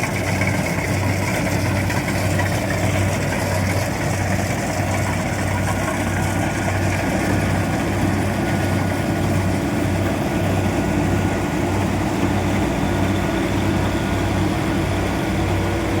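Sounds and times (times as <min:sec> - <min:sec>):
combine harvester engine droning: 0:00.0 - 0:16.0.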